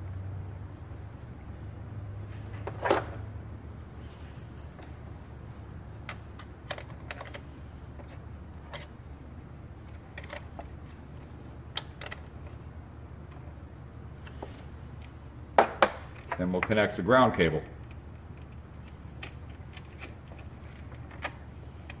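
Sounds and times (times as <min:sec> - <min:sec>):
steady low hum: 0:00.0 - 0:22.0
metallic clicks of bolt and nut: 0:06.0 - 0:09.1, 0:09.8 - 0:13.5, 0:15.9 - 0:16.8, 0:17.8 - 0:22.0.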